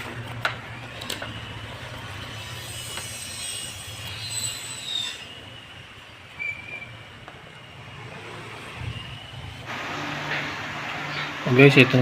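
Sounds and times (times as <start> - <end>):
metal squealing and scraping: 1.4 - 5.6, 6.4 - 7.1.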